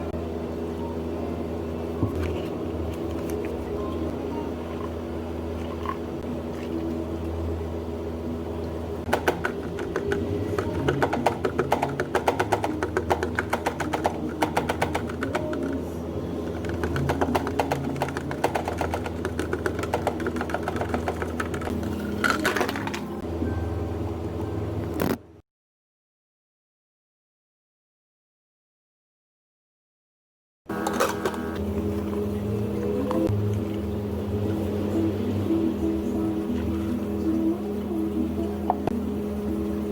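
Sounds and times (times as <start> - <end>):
machine hum: 0.0 - 25.4, 30.7 - 39.9
rapid clattering taps: 9.1 - 15.8, 16.5 - 21.8.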